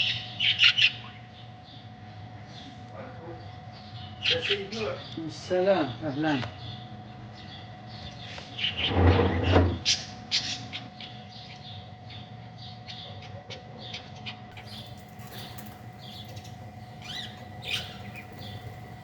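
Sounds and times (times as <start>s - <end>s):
birds chirping: 14.6s - 19.0s.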